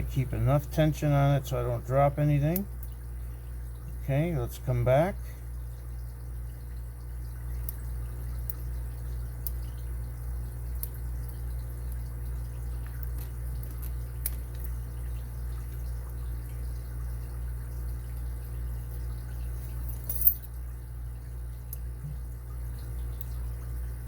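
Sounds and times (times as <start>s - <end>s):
low hum: 5.2s - 24.0s.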